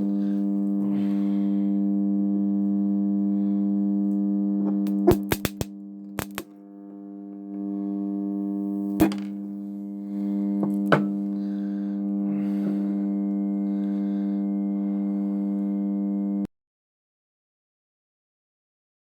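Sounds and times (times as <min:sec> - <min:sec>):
transformer humming: 0:00.0 - 0:02.0, 0:04.6 - 0:15.7
sharp clicks: 0:04.8 - 0:06.5.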